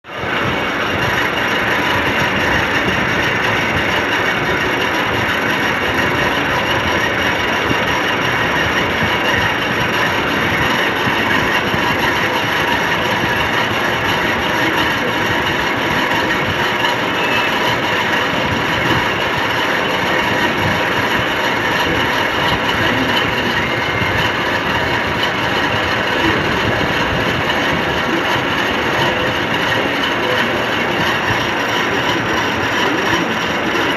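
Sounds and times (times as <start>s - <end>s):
metal lathe whirring and rattling: 0.0s - 33.9s.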